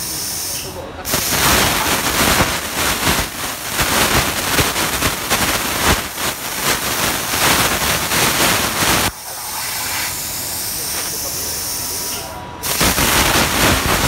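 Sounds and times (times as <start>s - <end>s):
plasma torch cutting metal: 0.0s - 14.0s.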